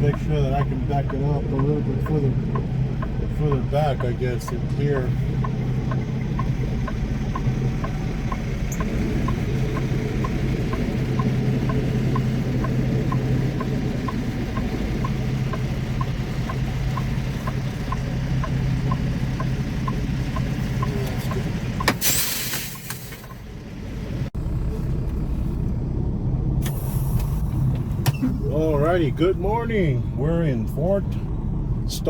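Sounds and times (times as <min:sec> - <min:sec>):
diesel truck engine: 0:00.0 - 0:32.0
reverse warning beeps: 0:02.5 - 0:22.4
air brake hiss: 0:22.0 - 0:23.3, 0:26.6 - 0:27.5.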